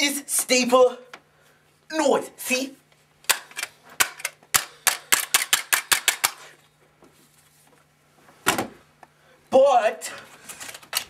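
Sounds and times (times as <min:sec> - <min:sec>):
stapler snap: 0:03.2 - 0:06.5
stapler clicking: 0:03.3 - 0:06.4.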